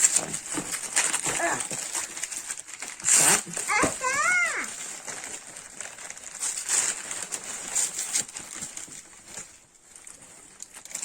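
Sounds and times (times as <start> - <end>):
wrapping paper rustling: 0.0 - 11.0.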